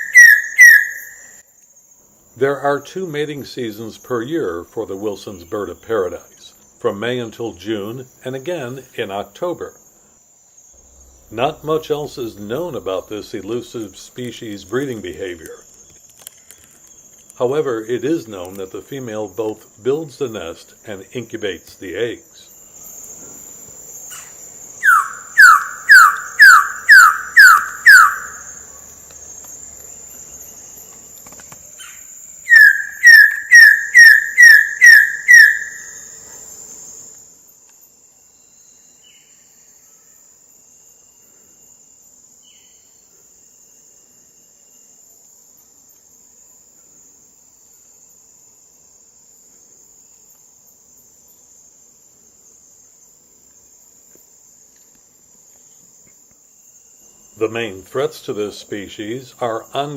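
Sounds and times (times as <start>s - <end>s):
bird calling descending notes: 0.0s - 1.4s, 24.8s - 28.5s, 32.5s - 36.0s
high-pitched insect buzz: 0.0s - 2.4s, 7.7s - 59.9s.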